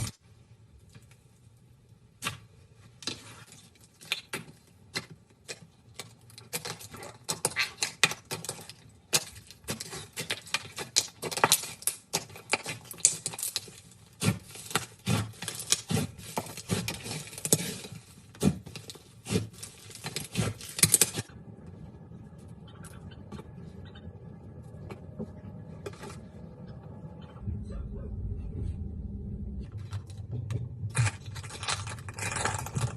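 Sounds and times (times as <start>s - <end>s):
faint steady hum: 17.5s - 32.9s.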